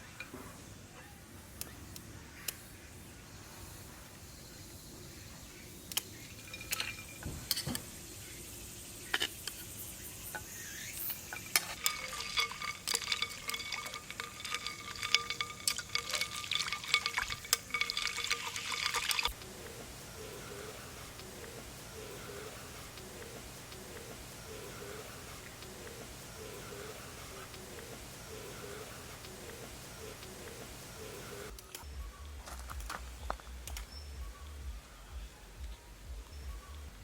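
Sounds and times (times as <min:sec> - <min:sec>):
crackling and liquid stirring: 0:01.5 - 0:34.6
steady whine: 0:05.6 - 0:37.0
metal clinks: 0:06.0 - 0:07.9, 0:10.4 - 0:31.8.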